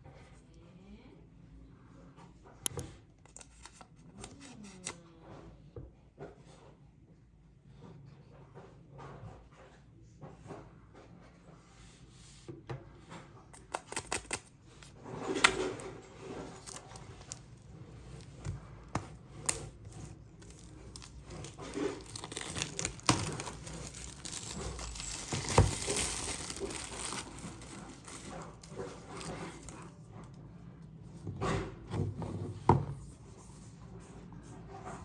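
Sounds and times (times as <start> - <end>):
paper tearing and crinkling: 15.3 - 18.4, 19.3 - 29.9
handling clicks and knocks: 20.4 - 29.8.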